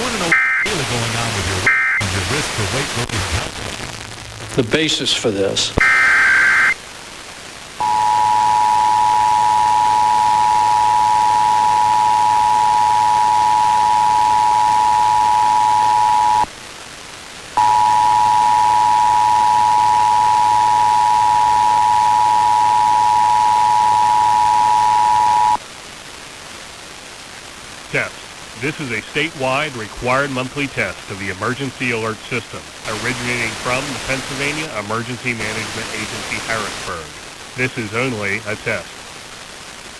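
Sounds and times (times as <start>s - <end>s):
two-tone attention signal: 0.3s - 1.0s, 1.6s - 2.1s, 7.8s - 16.5s, 17.6s - 25.6s.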